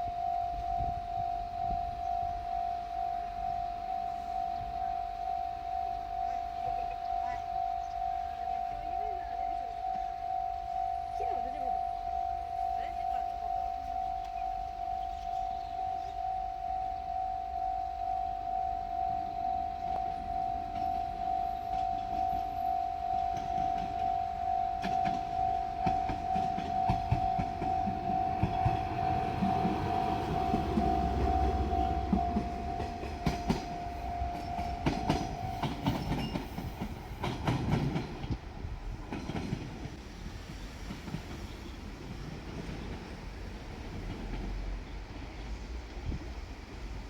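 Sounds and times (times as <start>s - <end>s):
level crossing bell ringing: 0.0s - 37.0s
low engine rumble: 0.0s - 39.2s
wheels clicking over rail joints: 19.4s - 47.0s.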